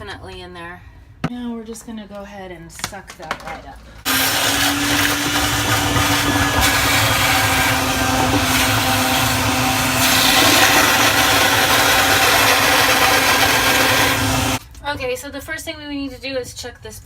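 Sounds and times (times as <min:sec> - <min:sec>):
vacuum sucking water: 0:04.1 - 0:14.6.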